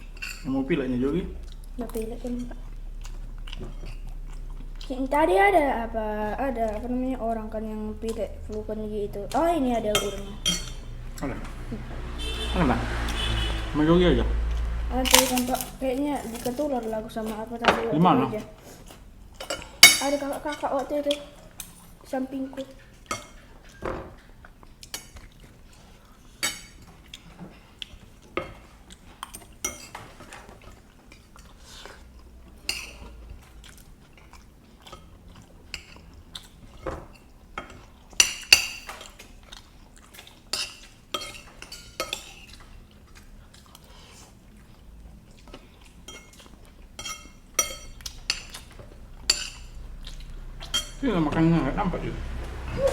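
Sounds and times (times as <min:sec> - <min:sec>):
faint chewing: 0:01.2 - 0:05.2, 0:14.4 - 0:17.6, 0:18.4 - 0:51.0
cutlery clinking on plates: 0:10.0 - 0:10.9, 0:15.1 - 0:16.7, 0:19.4 - 0:20.6, 0:23.0 - 0:24.3, 0:26.4 - 0:27.0, 0:32.6 - 0:33.2, 0:36.8 - 0:39.3, 0:40.5 - 0:42.6, 0:46.0 - 0:49.8.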